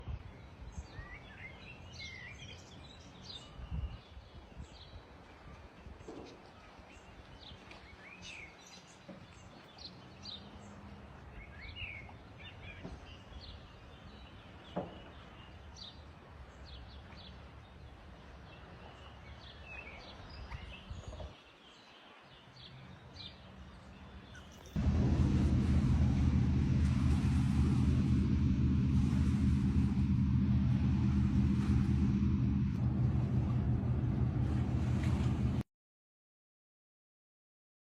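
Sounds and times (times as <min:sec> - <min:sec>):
songbirds chirping: 0:00.0 - 0:35.3
low background rumble: 0:24.7 - 0:35.6.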